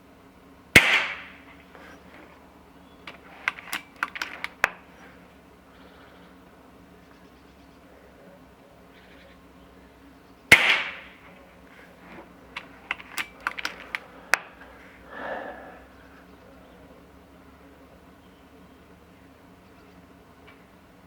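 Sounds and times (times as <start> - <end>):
air rifle shot: 0.8 - 2.0, 3.1 - 4.9, 10.5 - 11.4, 12.6 - 14.6
cocking lever metallic clicks: 3.0 - 4.8, 12.1 - 14.5.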